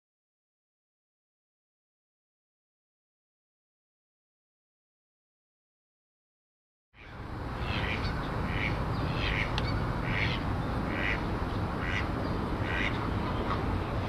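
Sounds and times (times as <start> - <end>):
waterfowl calling: 7.0 - 14.0.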